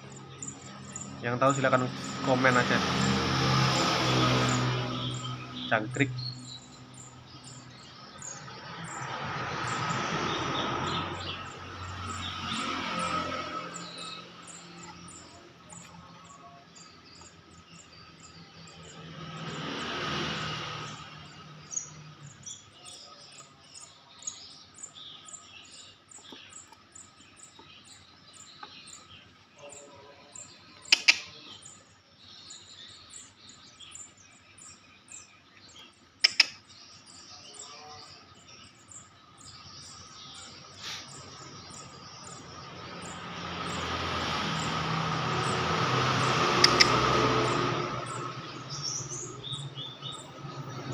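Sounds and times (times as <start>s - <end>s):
nestling birds cheeping: 0.0s - 50.9s
sharp double clicks: 30.9s - 31.4s, 36.2s - 36.6s, 46.5s - 47.1s.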